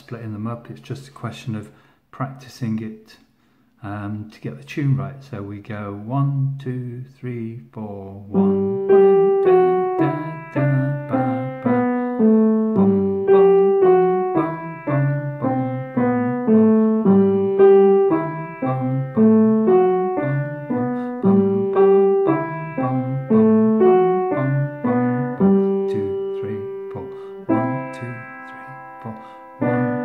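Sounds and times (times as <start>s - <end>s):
piano playing bell-like tune: 8.4s - 30.0s.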